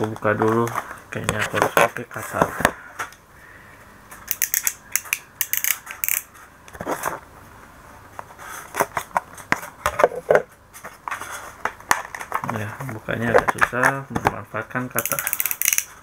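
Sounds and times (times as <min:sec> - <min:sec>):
packaging crackling and snapping: 0:15.0 - 0:16.0.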